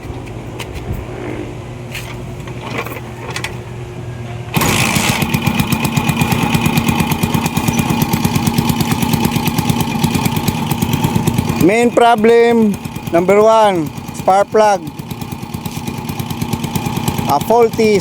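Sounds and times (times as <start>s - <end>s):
motorcycle engine running: 4.5s - 18.0s.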